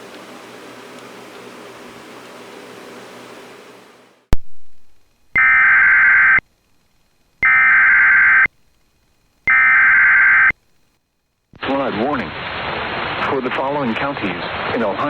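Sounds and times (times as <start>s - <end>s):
digital data tone bursts: 5.4s - 6.4s, 7.4s - 8.5s, 9.5s - 10.6s.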